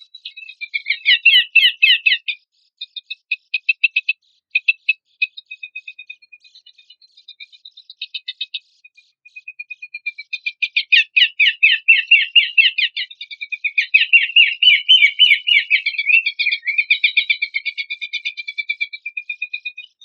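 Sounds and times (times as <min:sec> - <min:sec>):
songbird chattering song: 0:00.0 - 0:20.0.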